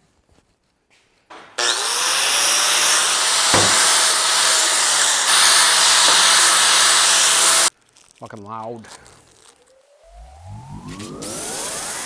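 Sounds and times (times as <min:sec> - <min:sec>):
angle grinder grinding steel: 0:01.3 - 0:07.7
sharp knock: 0:02.5 - 0:05.4.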